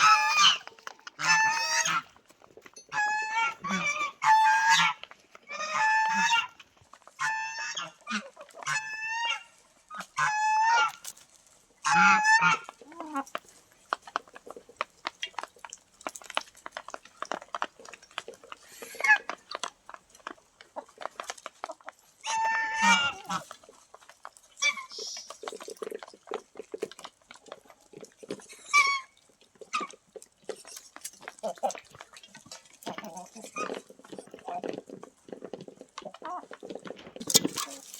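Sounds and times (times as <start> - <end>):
chicken squawk: 0.0 - 2.1, 2.9 - 6.5, 7.2 - 11.0, 11.8 - 13.3, 22.2 - 23.5
poultry calling: 0.0 - 2.2, 2.9 - 6.6, 7.2 - 11.1, 11.8 - 13.4, 18.6 - 19.6, 22.2 - 23.6
chickens pecking at feed: 0.0 - 37.9.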